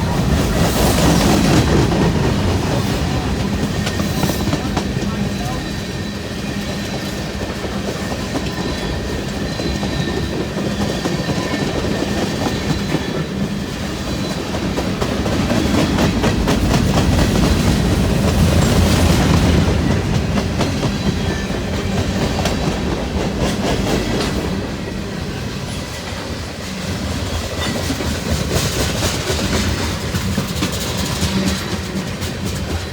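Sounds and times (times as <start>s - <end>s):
train rumble: 0.0s - 32.9s.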